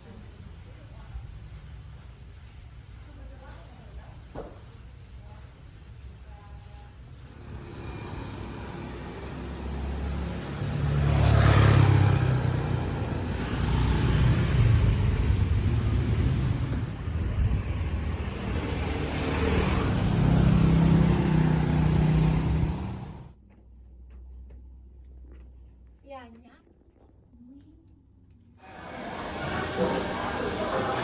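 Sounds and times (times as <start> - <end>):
vehicles passing: 7.2 - 23.4, 28.6 - 31.0.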